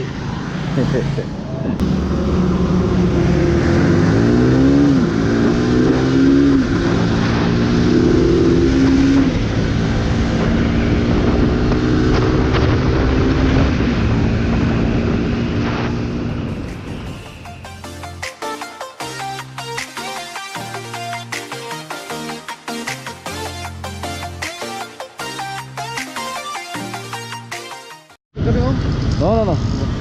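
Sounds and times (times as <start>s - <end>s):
motorcycle engine accelerating: 1.8s - 17.4s
wind rushing: 3.3s - 17.8s.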